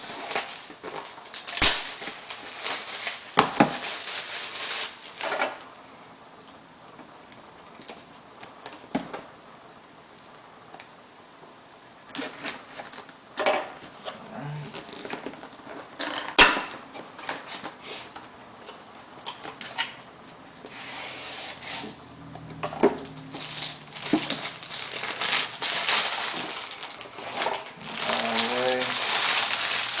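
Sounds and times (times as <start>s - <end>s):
packaging crinkling and rustling: 0.0s - 5.6s, 23.0s - 30.0s.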